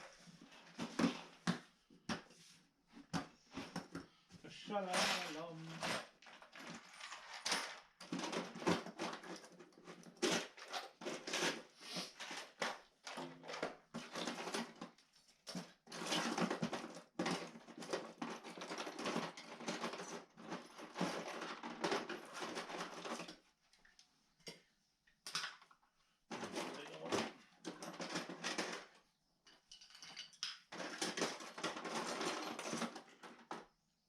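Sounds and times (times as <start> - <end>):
small hard objects clattering: 4.6 - 23.4, 26.3 - 33.8.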